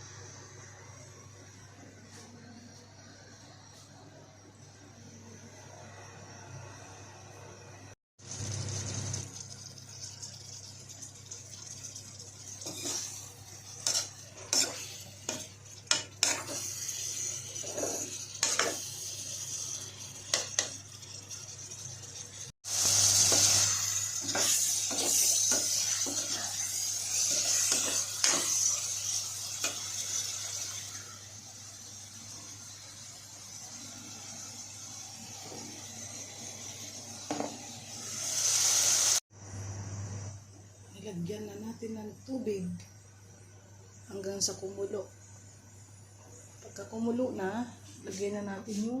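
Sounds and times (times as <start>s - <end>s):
food sizzling in oil: 8.2s - 39.2s
utensil scraping a pan: 13.8s - 18.9s, 24.2s - 28.7s.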